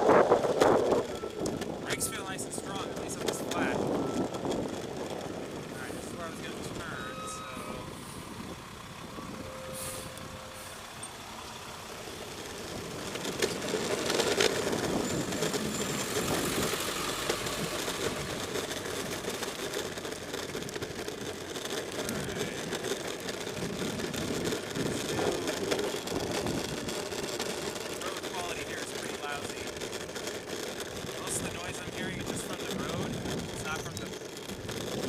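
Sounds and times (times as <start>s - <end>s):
wheels rattling over pavement: 0.0s - 35.0s
wind on microphone: 3.0s - 10.6s.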